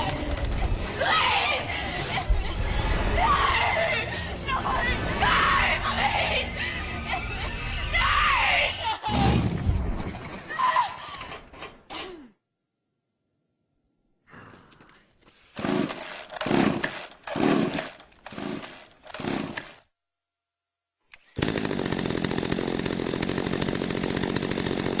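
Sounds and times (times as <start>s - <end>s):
chainsaw running: 15.6s - 19.9s, 21.2s - 25.0s
click: 21.1s - 21.3s.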